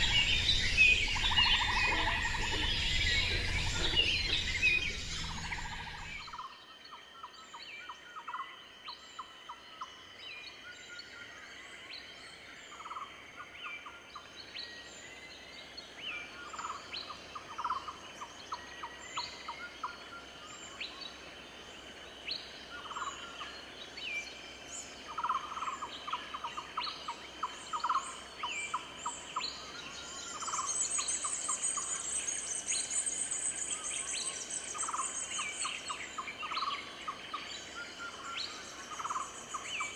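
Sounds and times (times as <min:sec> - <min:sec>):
high-pitched insect tones: 0:00.0 - 0:06.2
dense high insect buzz: 0:00.0 - 0:06.3
birds trilling and chirping: 0:00.0 - 0:06.4.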